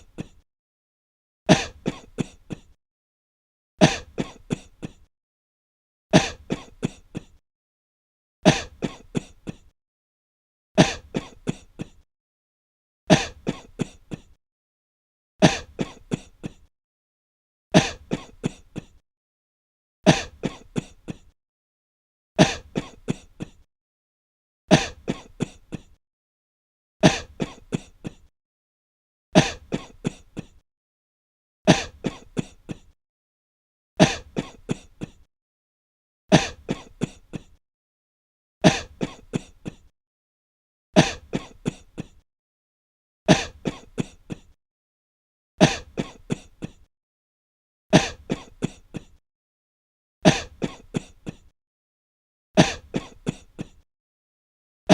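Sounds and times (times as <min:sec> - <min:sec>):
person coughing: 0:00.0 - 0:00.4, 0:01.5 - 0:02.8, 0:03.8 - 0:05.1, 0:06.1 - 0:07.4, 0:08.5 - 0:09.7, 0:10.8 - 0:12.0, 0:13.1 - 0:14.4, 0:15.4 - 0:16.7, 0:17.8 - 0:19.0, 0:20.1 - 0:21.4, 0:22.4 - 0:23.7, 0:24.7 - 0:26.0, 0:27.0 - 0:28.3, 0:29.4 - 0:30.6, 0:31.7 - 0:33.0, 0:34.0 - 0:35.3, 0:36.3 - 0:37.6, 0:38.7 - 0:39.9, 0:41.0 - 0:42.2, 0:43.3 - 0:44.6, 0:45.6 - 0:46.9, 0:48.0 - 0:49.2, 0:50.3 - 0:51.5, 0:52.6 - 0:53.8.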